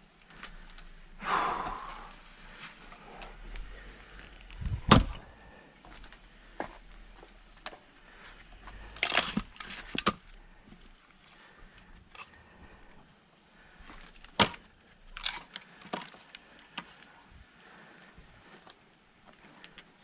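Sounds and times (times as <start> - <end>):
firewood splitting knocks and cracks: 4.6 - 5.3, 8.7 - 10.9, 14.0 - 17.0.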